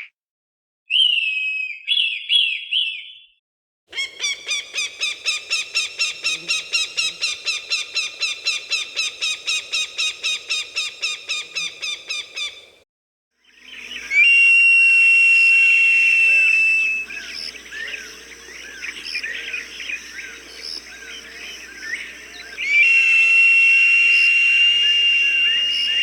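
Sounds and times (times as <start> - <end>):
hawk calls: 3.9 - 12.7, 15.9 - 26.0.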